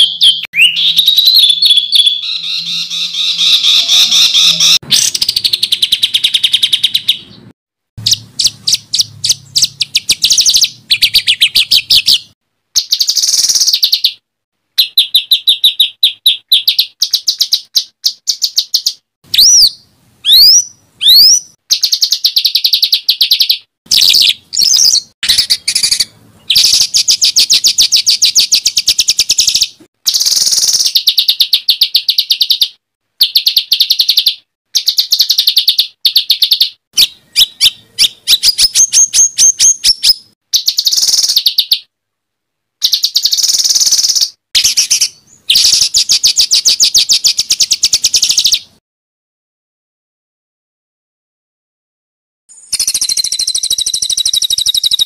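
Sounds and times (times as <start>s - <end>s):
loud whistled bird notes: 0.0s - 7.4s, 8.0s - 14.2s, 14.8s - 41.9s, 42.8s - 48.7s, 52.5s - 55.0s
songbird chattering trills: 0.0s - 14.2s, 33.3s - 41.9s, 42.8s - 48.7s, 52.7s - 55.0s.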